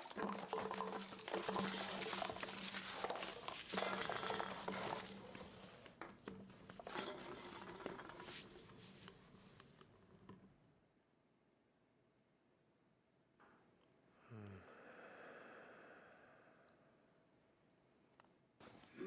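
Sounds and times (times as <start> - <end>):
crinkling rustling: 0.0 - 10.4.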